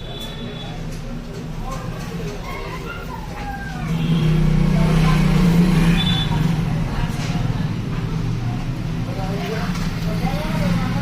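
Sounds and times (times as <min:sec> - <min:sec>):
faint voices: 0:00.0 - 0:11.0
vehicle engine running: 0:03.7 - 0:11.0.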